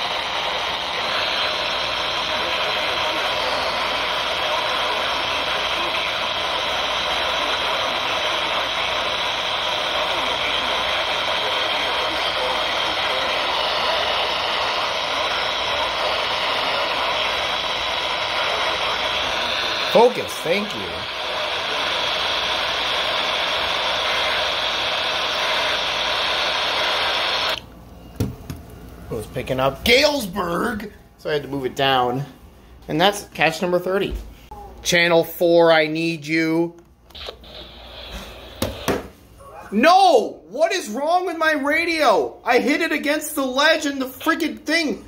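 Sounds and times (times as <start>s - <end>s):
radio static hiss: 0.0s - 27.6s, 35.7s - 39.3s.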